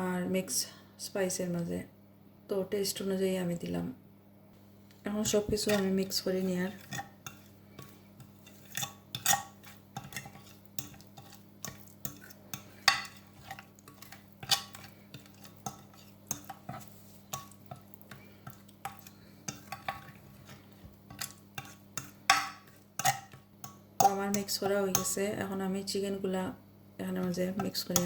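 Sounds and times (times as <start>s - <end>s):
spoon clinking and scraping bowl: 5.2s - 25.2s, 27.2s - 28.0s.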